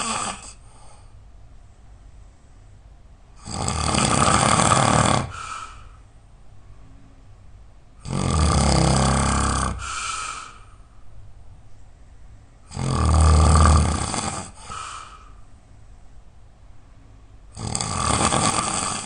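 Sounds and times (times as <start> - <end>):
person snoring loudly: 0.0 - 0.6, 3.4 - 5.5, 8.0 - 10.6, 12.7 - 14.8, 17.5 - 19.0
quiet breath: 0.0 - 2.8, 5.2 - 7.3, 9.3 - 12.7, 14.4 - 16.2.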